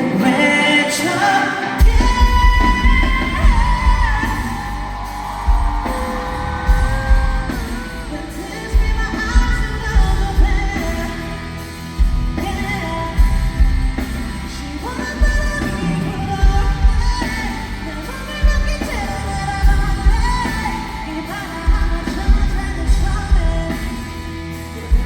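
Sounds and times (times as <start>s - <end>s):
person singing: 0.0s - 25.0s
heavy kick drum and bass: 1.9s - 14.5s.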